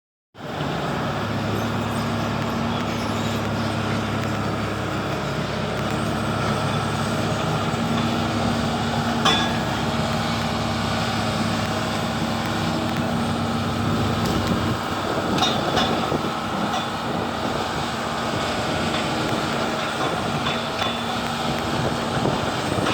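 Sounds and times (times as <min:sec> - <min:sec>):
excavator diesel engine running: 0:00.4 - 0:22.9.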